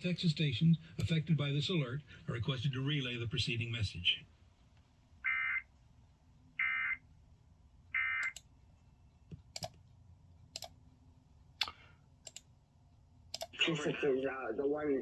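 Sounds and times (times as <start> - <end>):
sharp clicks: 10.6 - 10.8, 11.6 - 12.5, 13.3 - 13.6.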